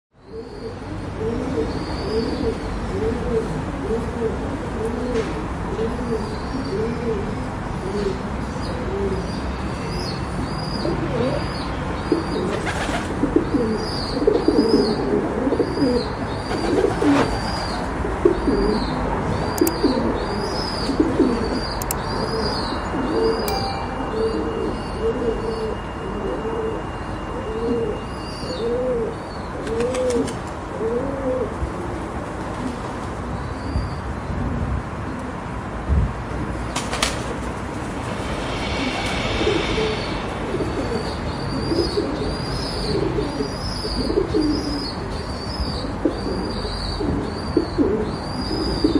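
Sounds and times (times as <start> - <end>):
pigeons cooing: 41.6 - 44.9, 45.8 - 48.9.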